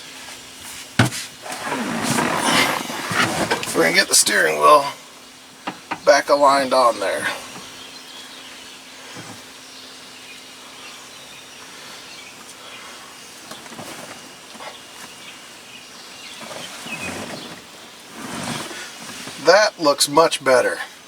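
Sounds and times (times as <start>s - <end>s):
faint steady hiss: 0.0s - 21.0s.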